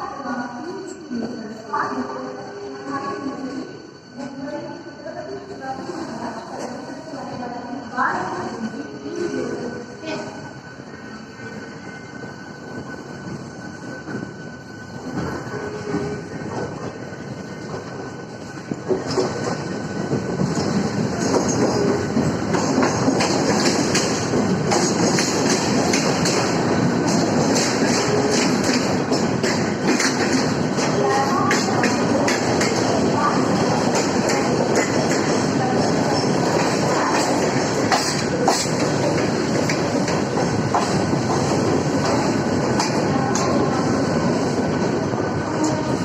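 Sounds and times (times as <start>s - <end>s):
electric train running: 7.5s - 45.9s
train wheels clattering over rail joints: 18.7s - 43.6s.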